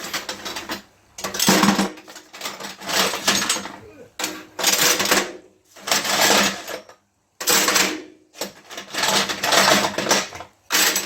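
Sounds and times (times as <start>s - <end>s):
copper pipes clattering: 0.0s - 6.8s.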